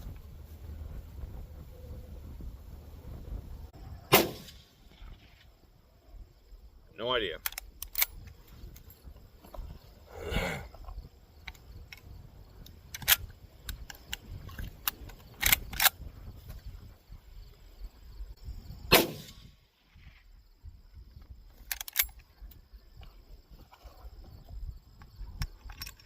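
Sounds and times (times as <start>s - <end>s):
rifle shots: 4.1s - 4.9s, 18.9s - 19.6s
rifle lever clacking: 7.4s - 8.2s, 21.6s - 22.2s.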